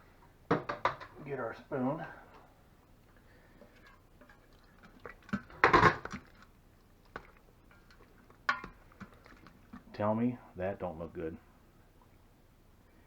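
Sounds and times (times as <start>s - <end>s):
cookware clattering: 5.4s - 6.2s, 8.5s - 8.8s.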